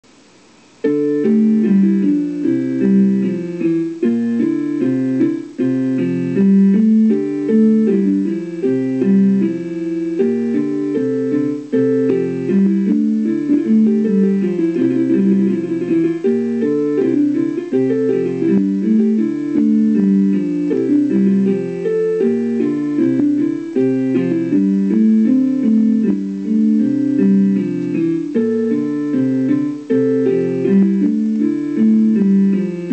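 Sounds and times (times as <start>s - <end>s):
electric piano playing: 0.4s - 32.9s.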